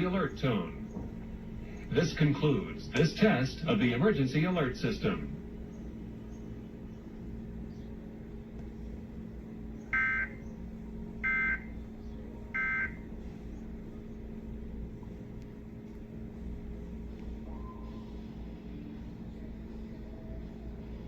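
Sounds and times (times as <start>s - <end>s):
steady low hum: 0.0s - 21.0s
digital data tone bursts: 10.0s - 10.4s.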